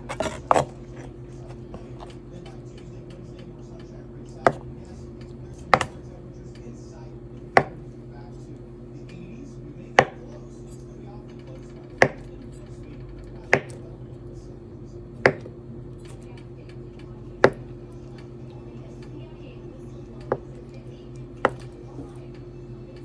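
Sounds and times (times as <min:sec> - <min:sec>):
knife chopping on cutting board: 0:00.0 - 0:02.2, 0:04.4 - 0:04.7, 0:05.7 - 0:06.0, 0:07.5 - 0:07.8, 0:10.0 - 0:10.3, 0:12.0 - 0:12.3, 0:13.4 - 0:13.8, 0:15.2 - 0:16.2, 0:17.4 - 0:17.7, 0:20.2 - 0:20.6, 0:21.4 - 0:22.1
steady low hum: 0:00.0 - 0:23.0.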